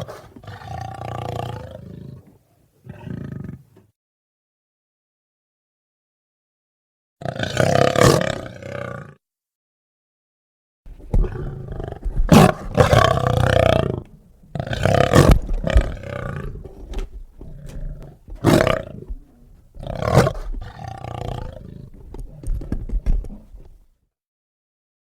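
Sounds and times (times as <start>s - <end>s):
big cat growling: 0.0s - 3.9s, 7.2s - 9.2s, 10.9s - 23.9s.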